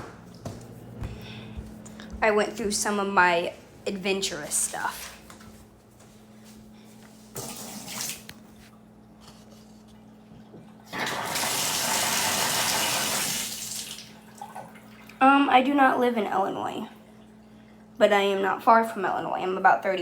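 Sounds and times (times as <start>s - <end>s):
water running from a tap: 10.9s - 14.8s.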